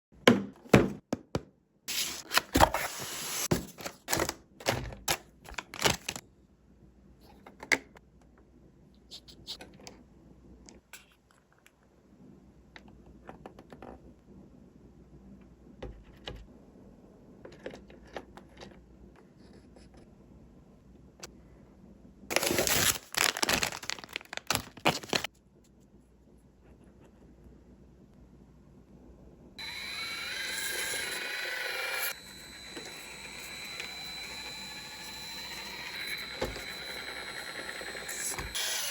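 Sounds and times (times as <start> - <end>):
packaging scraping and rustling: 1.9 - 4.4, 5.0 - 6.2, 22.3 - 25.3.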